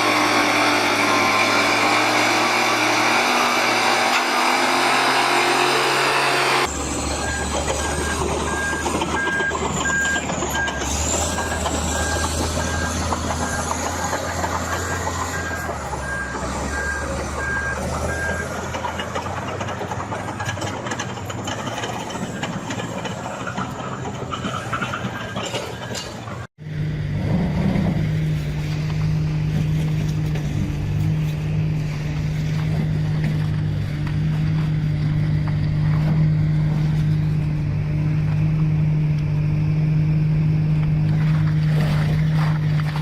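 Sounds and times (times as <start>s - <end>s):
diesel engine droning: 0.0s - 43.0s
heavy machinery clattering: 6.7s - 26.5s.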